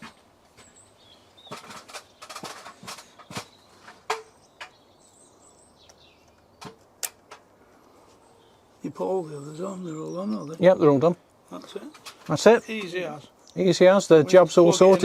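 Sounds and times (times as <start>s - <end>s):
electrical connectors clicking: 5.8s - 7.5s.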